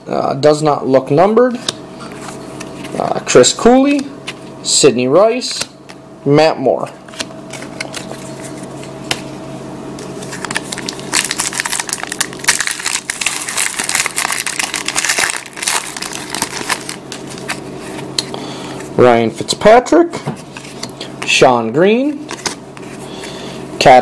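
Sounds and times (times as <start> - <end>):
foil wrapper crinkling: 10.2 - 18.0.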